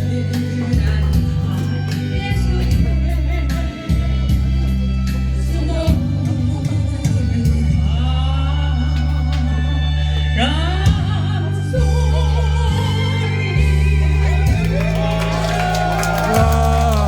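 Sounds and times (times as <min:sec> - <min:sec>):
backing track bass line: 0:00.0 - 0:17.0
person singing ballad: 0:00.0 - 0:17.0.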